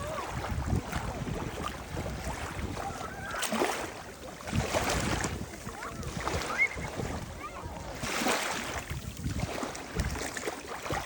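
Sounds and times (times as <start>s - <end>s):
sea waves lapping at shore: 0.0s - 11.0s.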